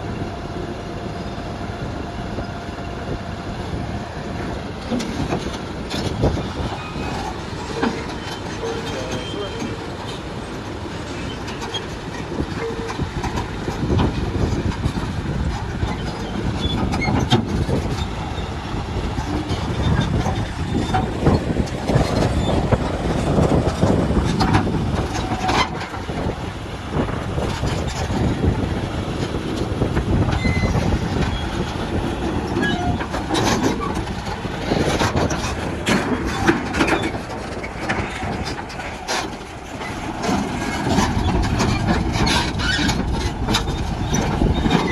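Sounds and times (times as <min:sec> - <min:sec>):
bulldozer diesel rumble: 0:00.0 - 0:44.9
steel tracks clanking and squealing: 0:00.0 - 0:44.9.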